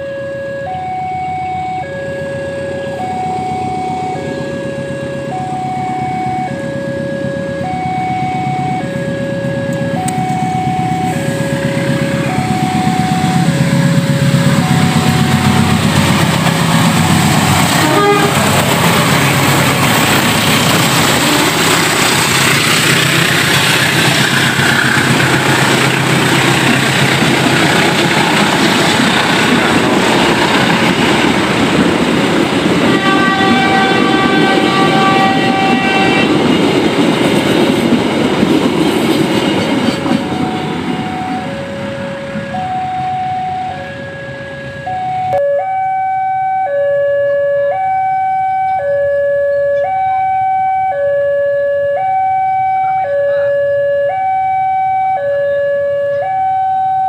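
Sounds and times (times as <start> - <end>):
locomotive horn blast: 0.0 - 31.5, 32.6 - 36.8, 39.5 - 57.0
crossing alarm two-tone warning: 0.0 - 57.0
diesel locomotive engine: 0.0 - 57.0
train wheels rumbling: 3.7 - 45.4.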